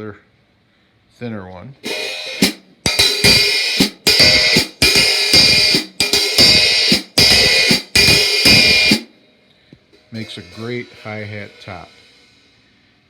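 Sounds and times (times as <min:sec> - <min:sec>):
hi-hat strokes: 0:01.8 - 0:09.1, 0:10.0 - 0:13.0.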